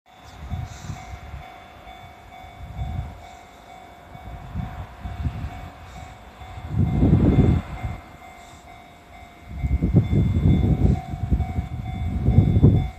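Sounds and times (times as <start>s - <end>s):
low rumbling: 9.1s - 12.9s.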